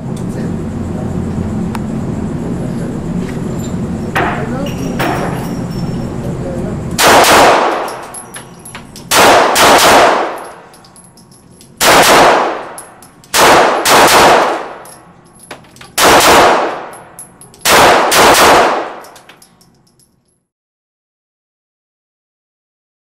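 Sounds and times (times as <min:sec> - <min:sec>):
pistol shots with echo: 0:07.0 - 0:08.3, 0:09.1 - 0:10.7, 0:11.8 - 0:14.9, 0:16.0 - 0:19.2.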